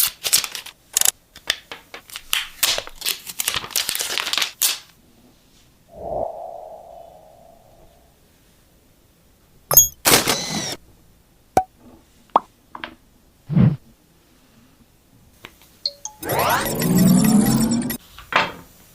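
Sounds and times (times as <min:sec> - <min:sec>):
rising tones: 0:05.9 - 0:08.1, 0:15.9 - 0:18.0.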